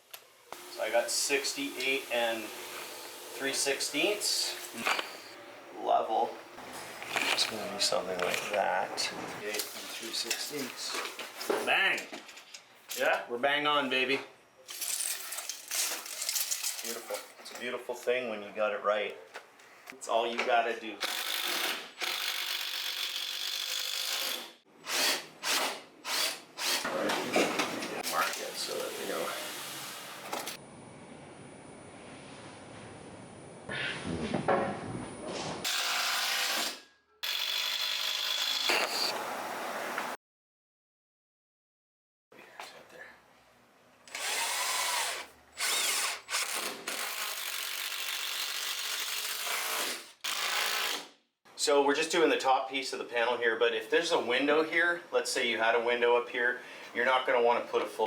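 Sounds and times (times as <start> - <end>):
power drill driving screw: 0.8 - 5.4, 21.0 - 26.9, 35.6 - 39.2, 44.1 - 51.1.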